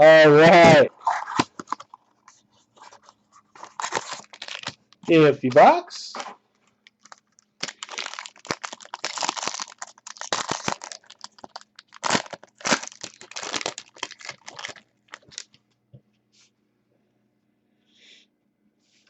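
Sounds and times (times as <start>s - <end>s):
card packaging crinkling and tearing: 0.5s - 2.1s, 2.8s - 5.2s, 6.8s - 15.6s.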